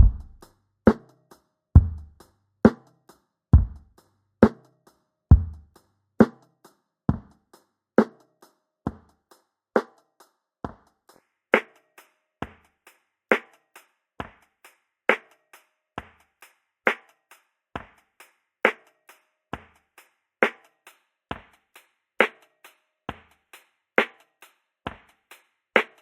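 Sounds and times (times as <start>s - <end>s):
drum loop kick and snare: 0.0s - 1.1s, 1.8s - 2.8s, 3.6s - 4.6s, 5.3s - 6.4s, 13.3s - 15.3s, 20.4s - 26.0s.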